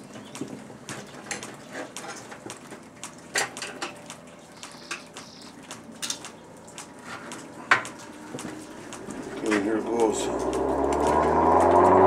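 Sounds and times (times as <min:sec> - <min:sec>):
clicks and knocks of hard objects: 0:00.2 - 0:11.2.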